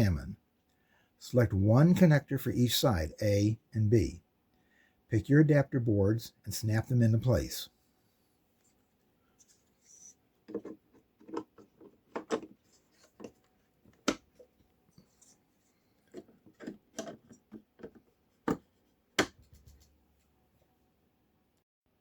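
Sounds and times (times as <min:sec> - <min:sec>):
scraping and rattling handling: 0:10.5 - 0:14.5.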